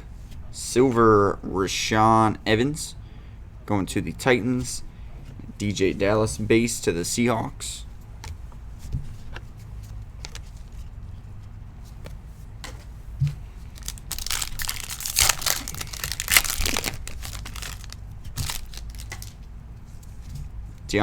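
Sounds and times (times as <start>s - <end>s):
foil wrapper tearing and crinkling: 13.7s - 19.4s.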